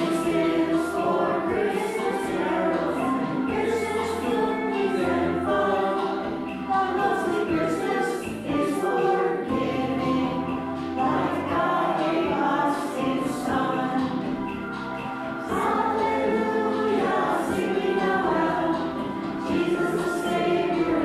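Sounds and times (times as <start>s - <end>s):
choir singing: 0.0s - 21.0s.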